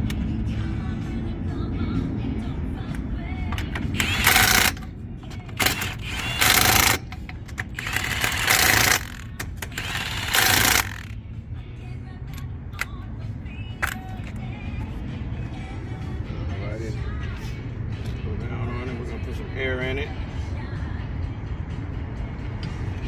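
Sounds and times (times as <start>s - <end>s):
impact wrench bursts: 3.7s - 4.8s, 5.5s - 11.2s.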